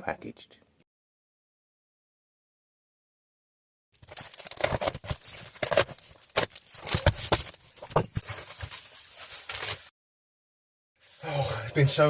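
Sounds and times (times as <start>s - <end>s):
wrapping paper tearing: 4.0s - 9.9s.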